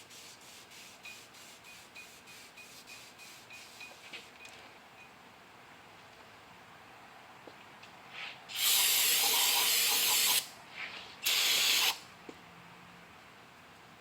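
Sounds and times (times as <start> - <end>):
pressurised spray hissing: 8.5 - 10.5, 11.2 - 12.0.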